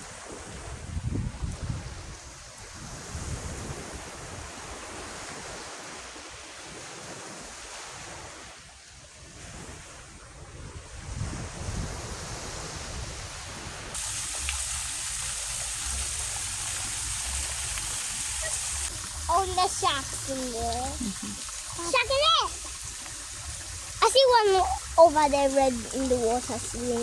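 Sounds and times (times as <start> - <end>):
wind buffeting microphone: 0.2 - 5.6, 10.4 - 13.9, 16.0 - 27.0
bright steady hiss: 14.0 - 27.0
ocean surf: 16.3 - 27.0.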